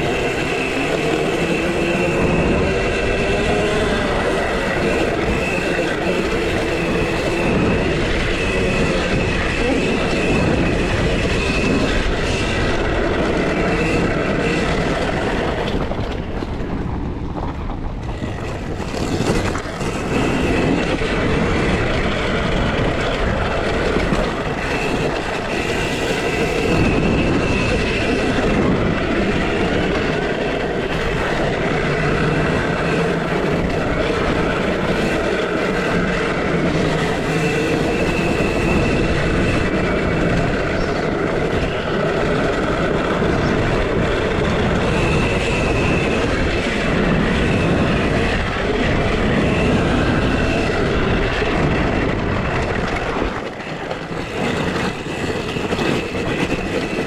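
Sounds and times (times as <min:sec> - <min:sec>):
electric motor whine: 0:00.0 - 0:16.7, 0:18.0 - 0:57.0
steady rushing noise: 0:00.0 - 0:57.0.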